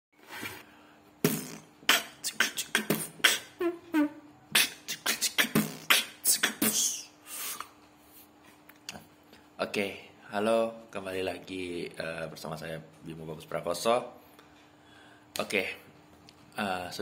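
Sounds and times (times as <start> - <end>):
beatboxing: 1.2 - 7.8.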